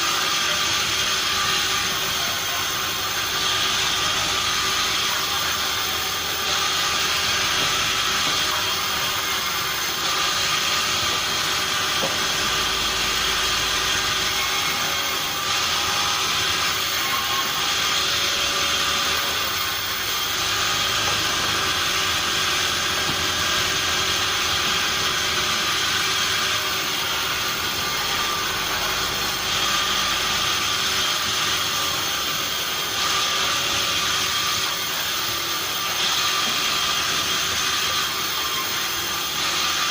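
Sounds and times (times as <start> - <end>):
sawmill machinery with whine: 0.0 - 39.9.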